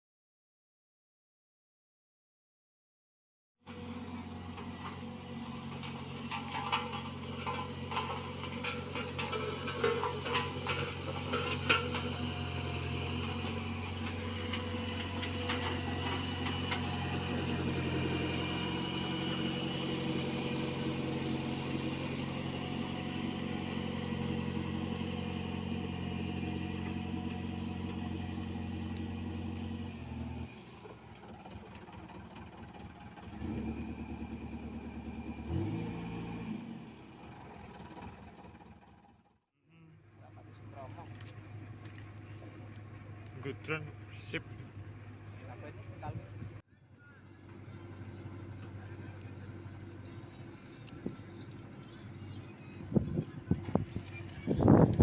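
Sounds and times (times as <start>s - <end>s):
diesel engine running: 3.7s - 55.0s
knocks and clanks: 4.6s - 17.1s.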